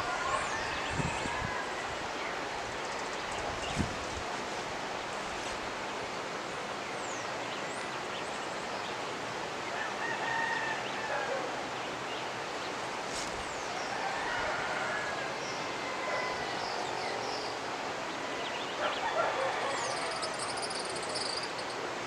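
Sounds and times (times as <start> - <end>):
rooster crowing: 0.0 - 1.9, 9.7 - 11.6, 13.7 - 17.3, 18.8 - 20.7
river rushing: 0.0 - 22.0.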